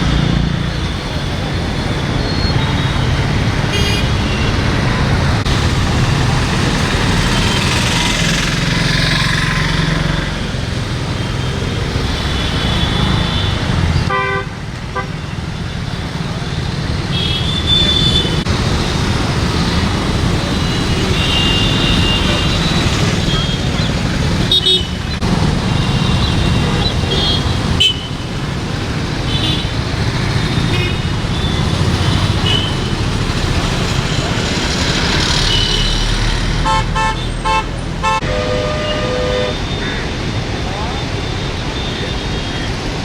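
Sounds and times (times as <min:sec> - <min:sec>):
road traffic: 0:00.0 - 0:43.0
vehicle horns tooting: 0:35.5 - 0:40.0.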